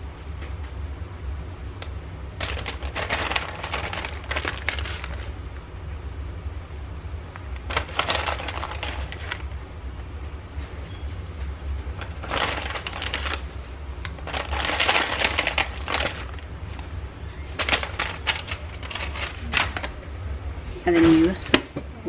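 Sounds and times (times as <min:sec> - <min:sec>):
steady low hum: 0:00.0 - 0:22.0
plastic bag crinkling: 0:02.3 - 0:05.4, 0:07.4 - 0:09.6, 0:11.6 - 0:20.0.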